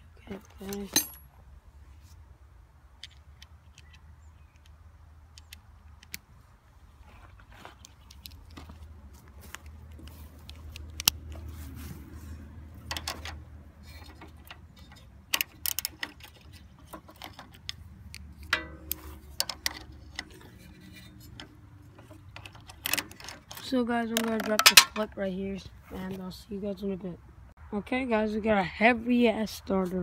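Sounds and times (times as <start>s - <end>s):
hand tools clinking on metal: 0.7s - 1.3s, 18.4s - 21.4s, 22.0s - 25.1s.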